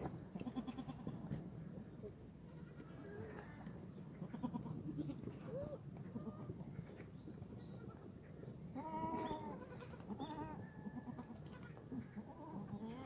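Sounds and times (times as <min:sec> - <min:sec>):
goats bleating: 0:04.2 - 0:05.3, 0:08.8 - 0:13.0.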